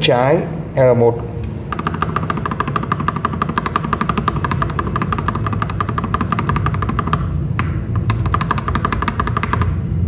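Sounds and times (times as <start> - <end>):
mechanical keyboard key presses: 1.7 - 9.8.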